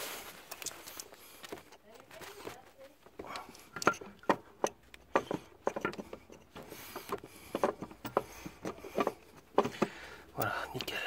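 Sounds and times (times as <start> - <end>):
metallic clicks and knocks: 3.1 - 11.0.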